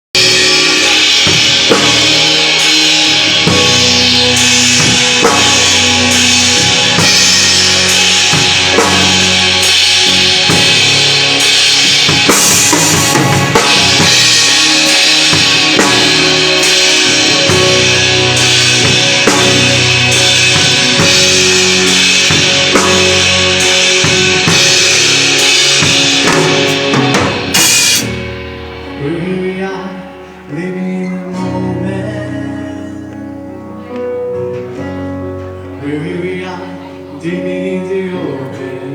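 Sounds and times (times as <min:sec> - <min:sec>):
drum kit: 0:00.1 - 0:30.1
live band playing loudly: 0:00.1 - 0:38.9.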